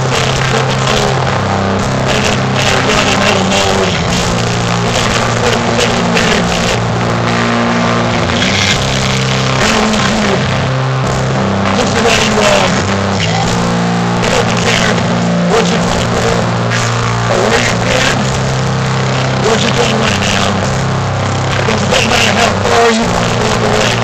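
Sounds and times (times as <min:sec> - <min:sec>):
drum hits: 0:00.0 - 0:16.4
live metal band: 0:00.0 - 0:24.0.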